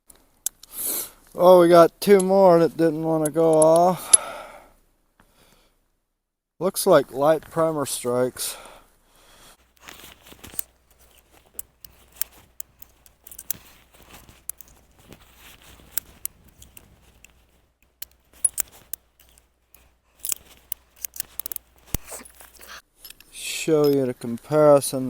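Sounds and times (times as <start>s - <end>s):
small metallic clicks and scrapes: 3.2s - 4.2s, 9.6s - 24.0s.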